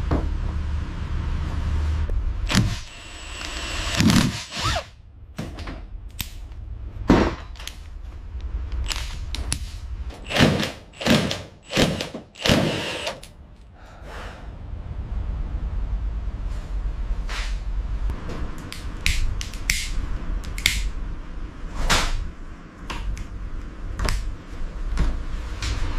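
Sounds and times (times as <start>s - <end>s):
steady low hum: 0.0s - 25.9s
power tool bursts: 2.5s - 4.9s, 10.2s - 13.3s.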